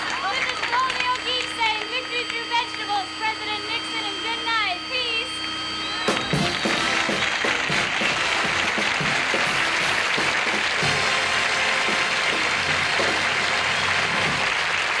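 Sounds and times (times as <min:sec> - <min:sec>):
audience applauding: 0:00.0 - 0:02.9, 0:06.1 - 0:15.0.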